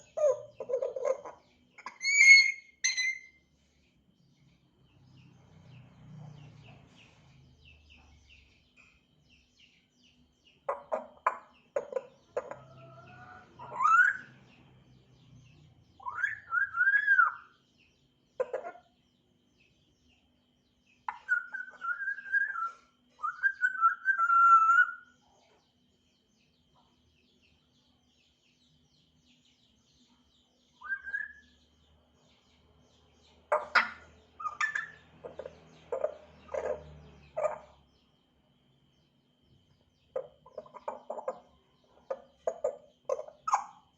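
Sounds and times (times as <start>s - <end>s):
parrot whistling: 1.8s - 3.3s, 21.3s - 25.0s.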